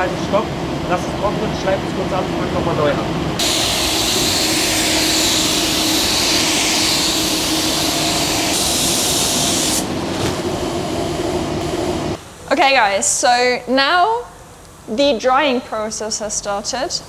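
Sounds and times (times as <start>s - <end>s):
steady low hum: 0.0s - 12.5s
paint spray gun hissing: 3.4s - 12.2s.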